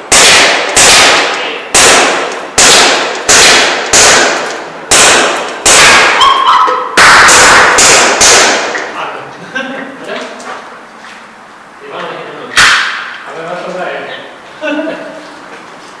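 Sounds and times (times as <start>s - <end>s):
airsoft pistol shots echoing: 0.1s - 6.2s, 7.0s - 8.9s.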